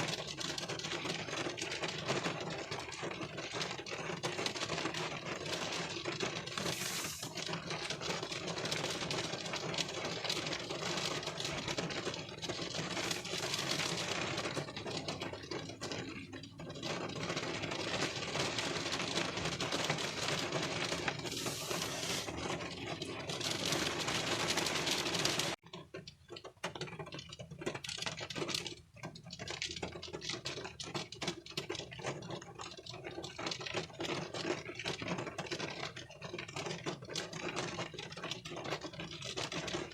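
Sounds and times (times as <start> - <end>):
rain pattering on car windshield: 0.0 - 39.9.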